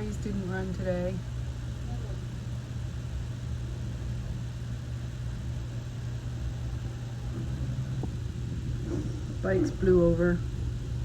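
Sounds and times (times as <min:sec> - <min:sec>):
wind buffeting microphone: 0:07.3 - 0:11.0.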